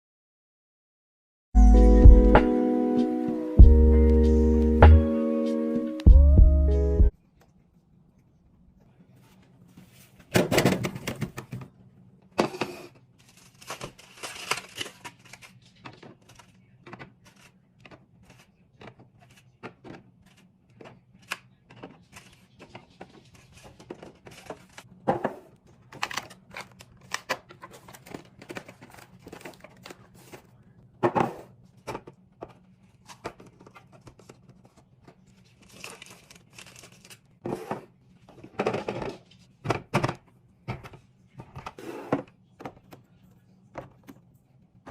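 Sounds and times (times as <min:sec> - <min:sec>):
plastic packaging crinkling and tearing: 0:13.2 - 0:16.5, 0:35.4 - 0:37.3.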